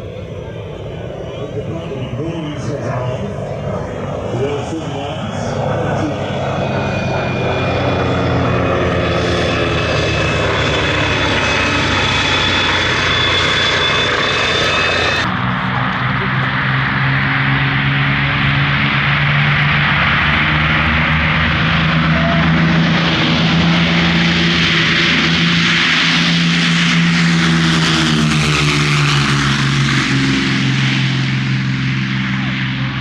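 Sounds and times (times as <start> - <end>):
propeller aircraft flying past: 0.0 - 33.0.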